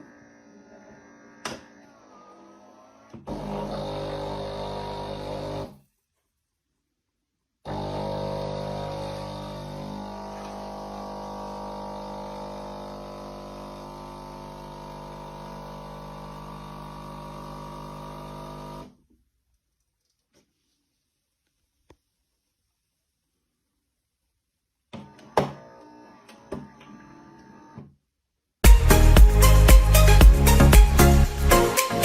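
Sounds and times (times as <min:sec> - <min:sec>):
espresso machine pump humming: 0:03.2 - 0:05.8, 0:07.7 - 0:18.9.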